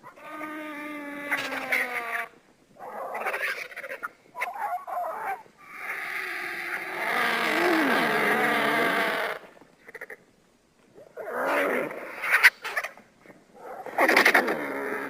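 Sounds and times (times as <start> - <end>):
creature calls: 0.0 - 10.2, 11.0 - 13.0, 13.6 - 15.0.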